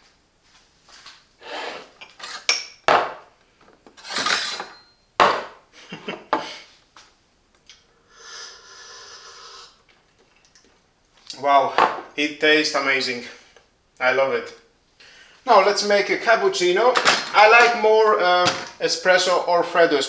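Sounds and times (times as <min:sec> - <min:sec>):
crockery knocks: 0:02.9 - 0:03.3, 0:04.2 - 0:05.6, 0:18.4 - 0:18.8
cups and saucers clinking: 0:04.0 - 0:05.5.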